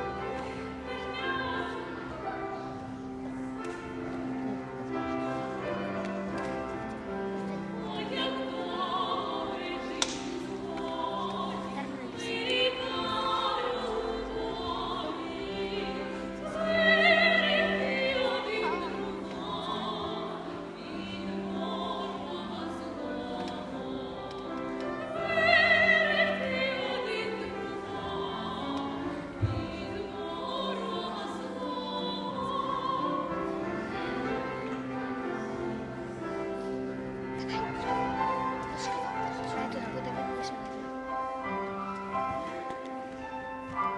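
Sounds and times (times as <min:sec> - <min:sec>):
musical accompaniment: 0:00.0 - 0:43.9
operatic singing: 0:07.6 - 0:36.5.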